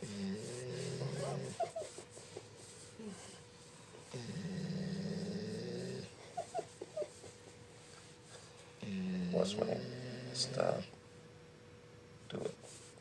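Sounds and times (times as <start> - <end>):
dog snoring: 0.0 - 1.8, 4.0 - 6.2, 8.8 - 10.9.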